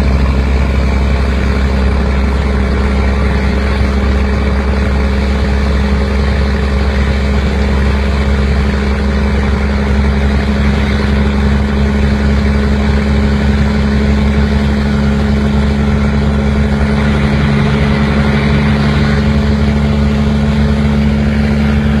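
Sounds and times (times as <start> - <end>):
vehicle engine running: 0.0 - 22.0.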